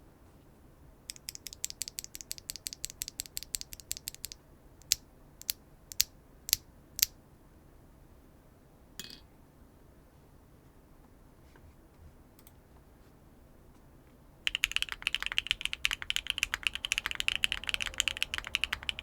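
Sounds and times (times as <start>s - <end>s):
mechanical keyboard typing: 1.1s - 6.1s, 14.5s - 19.0s
keyboard clatter: 14.5s - 19.0s.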